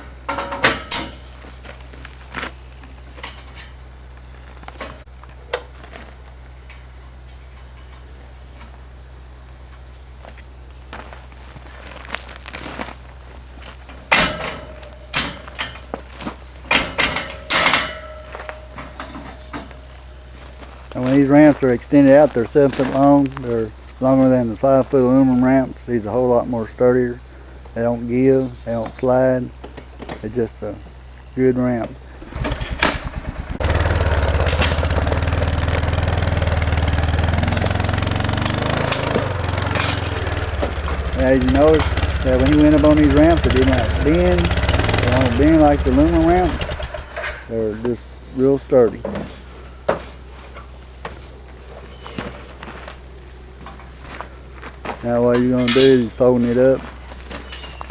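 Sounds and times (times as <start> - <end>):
metal ramp clanking: 0.0 - 1.5, 14.0 - 19.9, 32.2 - 47.5, 55.4 - 56.2
metallic ringing: 16.7 - 19.9
quad bike engine running: 32.1 - 47.6.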